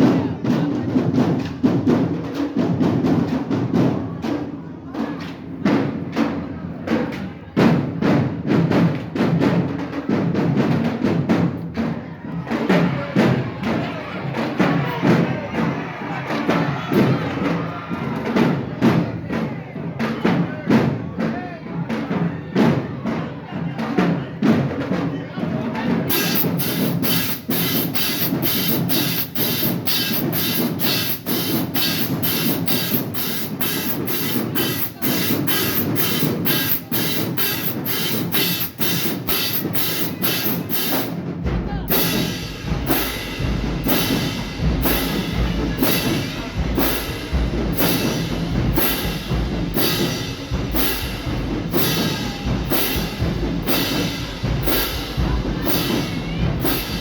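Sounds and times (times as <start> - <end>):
drumline beating fast pattern: 0.0 - 57.0
marching band playing: 0.0 - 57.0
heavy bass drum hits: 26.2 - 57.0.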